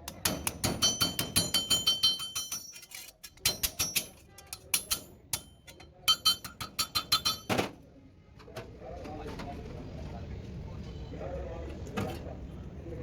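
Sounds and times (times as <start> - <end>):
hammer tapping on sheet metal: 0.0 - 2.7, 3.4 - 7.7.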